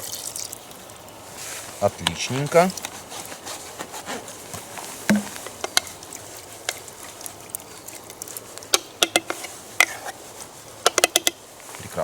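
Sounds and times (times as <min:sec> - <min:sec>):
low steady hiss: 0:00.0 - 0:12.0
sharp clicks and taps: 0:05.1 - 0:05.9.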